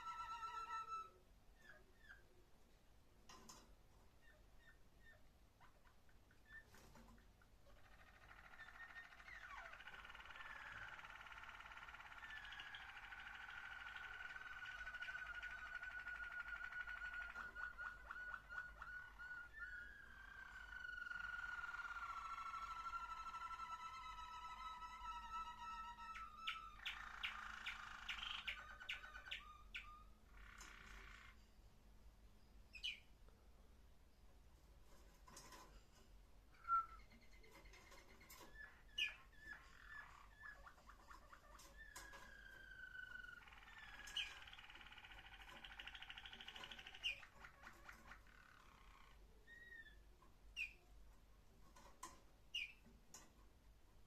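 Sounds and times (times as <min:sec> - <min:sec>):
canary singing trills: 0:00.0 - 0:02.4, 0:04.2 - 0:31.4, 0:32.4 - 0:33.2, 0:36.5 - 0:51.0, 0:51.7 - 0:53.3
sharp bird chirps: 0:07.8 - 0:31.4, 0:36.6 - 0:50.8.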